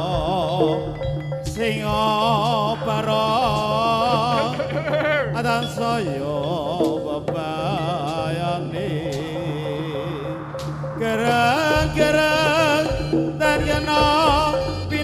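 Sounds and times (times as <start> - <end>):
gamelan accompaniment: 0.0 - 15.0
ornamented melody line: 0.0 - 15.0
steady held low tone: 4.2 - 13.4.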